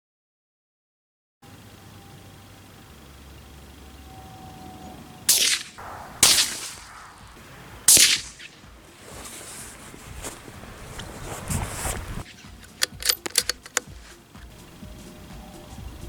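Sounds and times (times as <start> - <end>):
rifle shots with echo: 5.3 - 9.4, 12.2 - 13.9.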